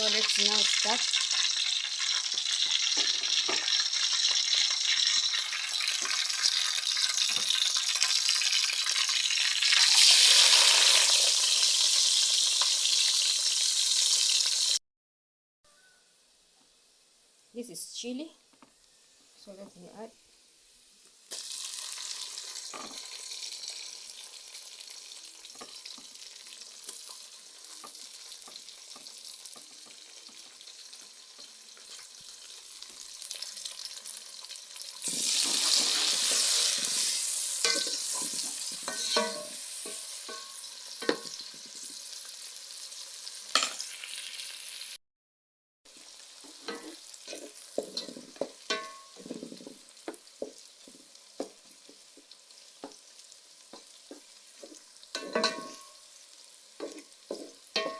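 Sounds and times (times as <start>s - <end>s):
onions sizzling in oil: 0.0s - 14.8s, 18.8s - 45.0s, 45.9s - 57.9s
spoon scraping and knocking pan: 2.3s - 4.4s, 22.6s - 23.1s, 25.5s - 33.5s, 35.0s - 42.0s, 46.4s - 53.0s, 53.7s - 56.0s, 56.8s - 57.9s.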